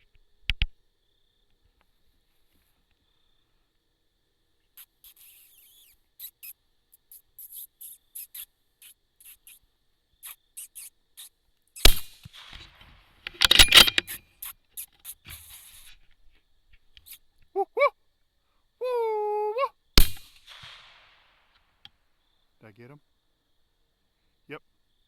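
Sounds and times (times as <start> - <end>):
faint high squeaks: 4.8 - 9.6, 13.3 - 16.0
rifle shots: 11.9 - 14.2, 20.0 - 21.2.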